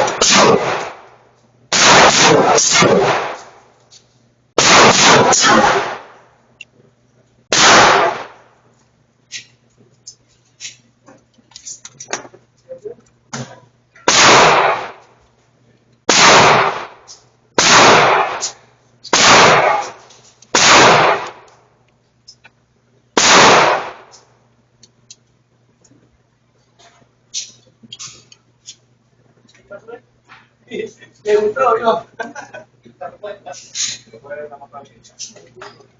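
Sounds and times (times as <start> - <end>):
gunshots: 0.0 - 3.7, 4.6 - 6.3, 7.5 - 8.5, 14.0 - 15.0, 16.1 - 21.5, 23.2 - 24.2.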